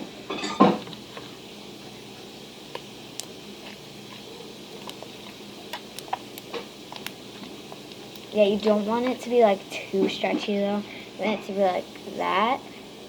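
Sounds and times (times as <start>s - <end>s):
low steady hiss: 0.0s - 13.0s
wet slime squishes: 2.7s - 9.3s.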